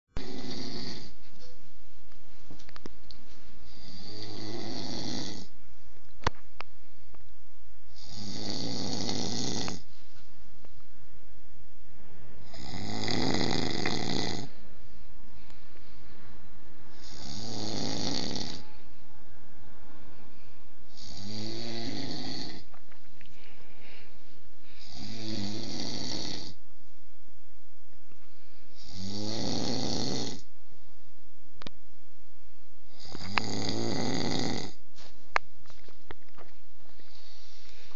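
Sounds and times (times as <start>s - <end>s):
person snoring: 0.1s - 1.2s, 3.6s - 5.5s, 7.9s - 9.9s, 12.4s - 14.5s, 16.9s - 18.7s, 20.9s - 22.7s, 24.8s - 26.6s, 28.7s - 30.5s, 32.9s - 34.8s.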